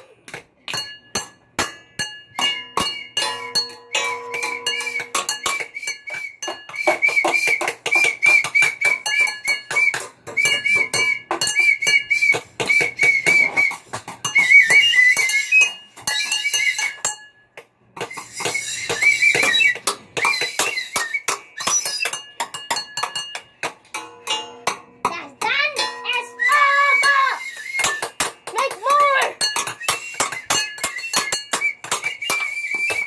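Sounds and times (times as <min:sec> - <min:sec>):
rapid clinking taps: 0:00.3 - 0:26.0, 0:27.5 - 0:33.0
warbling whistle-like tone: 0:02.4 - 0:17.1, 0:18.1 - 0:22.2, 0:26.3 - 0:28.2, 0:29.8 - 0:33.0.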